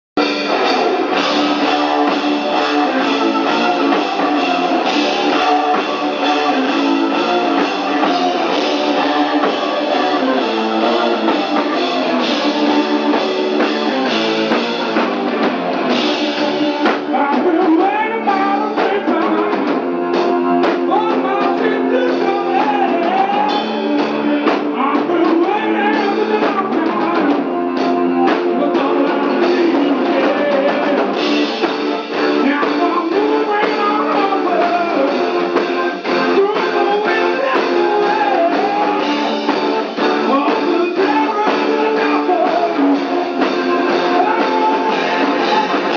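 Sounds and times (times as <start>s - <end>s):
drum kit: 0.2s - 45.9s
electric guitars: 0.2s - 45.9s
person singing: 0.2s - 45.9s.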